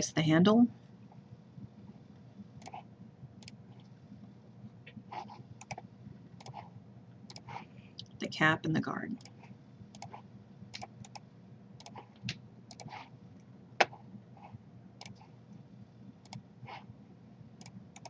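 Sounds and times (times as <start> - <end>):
faint low hum: 0.0 - 18.0
computer mouse clicking: 2.6 - 2.8, 3.4 - 3.9, 4.9 - 5.8, 6.4 - 6.7, 7.3 - 7.6, 9.2 - 13.1, 13.8 - 15.3, 16.2 - 16.4, 17.6 - 18.0.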